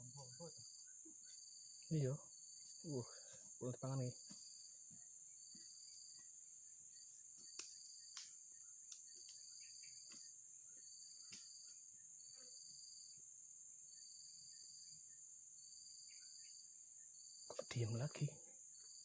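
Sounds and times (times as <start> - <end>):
insect high drone: 0.0 - 19.0
insect trills: 0.0 - 19.0
faint clicks: 7.4 - 9.4.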